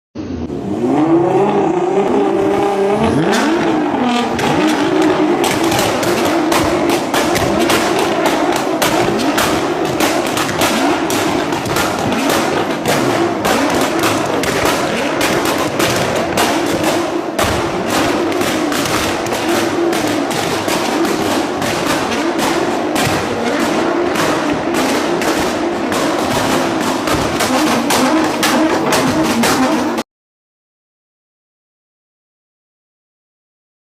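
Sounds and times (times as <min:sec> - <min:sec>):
car engine revving: 0:00.2 - 0:30.0
dense run of sharp clicks: 0:03.3 - 0:30.0.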